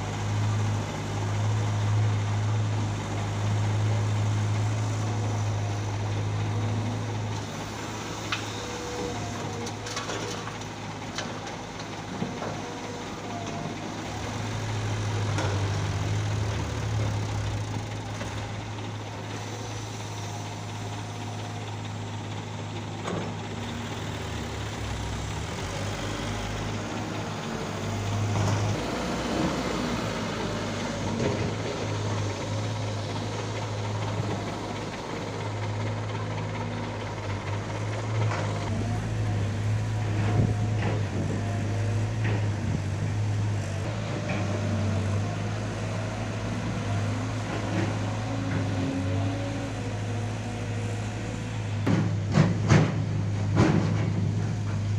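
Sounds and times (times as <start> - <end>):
heavy diesel engine humming: 0.0 - 54.9
knocks and clanks: 51.8 - 54.9.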